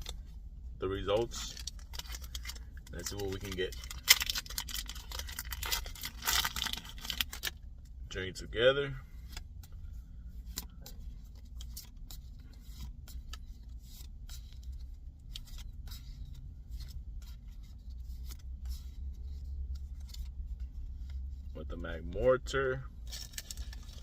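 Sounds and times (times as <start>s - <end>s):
steady low rumble: 0.0s - 24.0s
foil wrapper crinkling: 1.4s - 7.6s.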